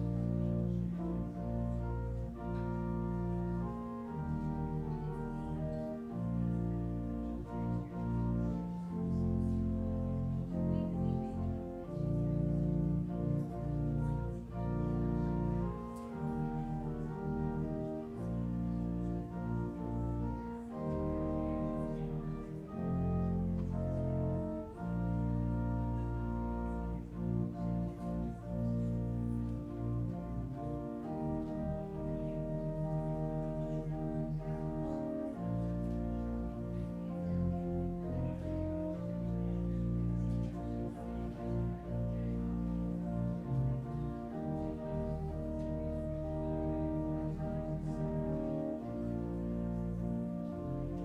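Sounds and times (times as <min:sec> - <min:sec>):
slow instrumental music: 0:00.0 - 0:51.0.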